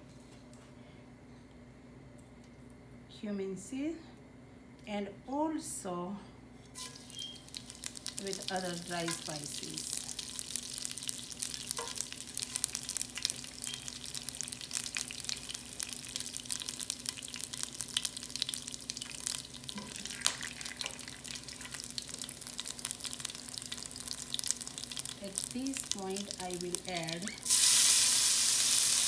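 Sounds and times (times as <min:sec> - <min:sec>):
spices sizzling in a pan: 0:06.8 - 0:29.0.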